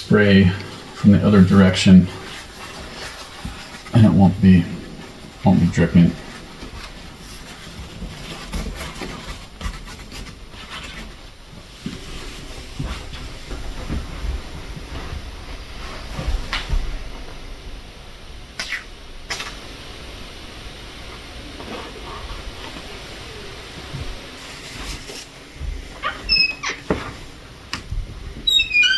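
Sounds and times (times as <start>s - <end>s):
paper towels rustling: 0.4s - 17.6s, 19.4s - 28.9s
spray can hissing: 18.6s - 19.9s.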